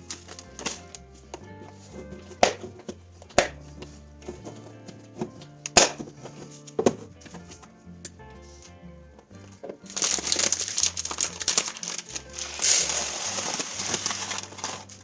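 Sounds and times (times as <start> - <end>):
food packaging crinkling: 0.0 - 1.0, 9.8 - 15.0
background music: 0.0 - 15.0.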